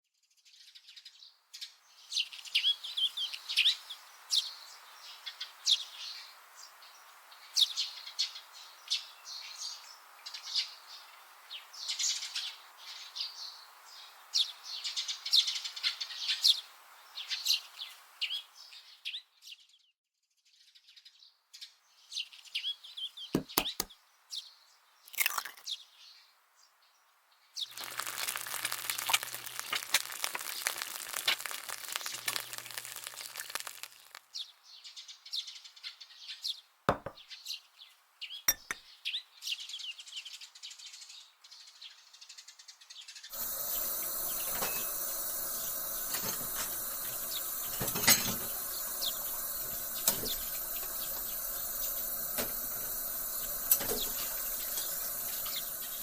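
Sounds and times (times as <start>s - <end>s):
faint steady hiss: 1.8s - 19.0s, 25.9s - 35.1s, 43.3s - 56.0s
birds chirping: 22.0s - 24.8s, 27.6s - 39.3s, 43.3s - 56.0s
sharp clicks: 23.4s - 23.9s
loud steady hiss: 27.7s - 34.3s, 43.3s - 56.0s.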